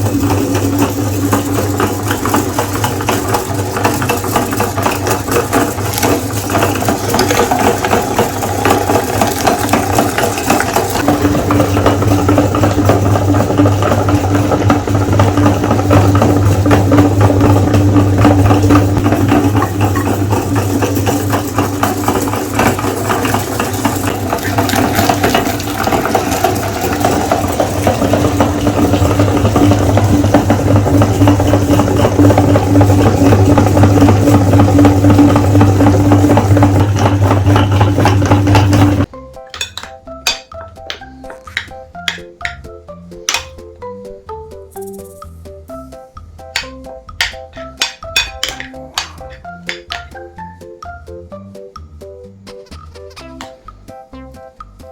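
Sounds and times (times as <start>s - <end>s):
electric meat grinder running: 0.0s - 39.1s.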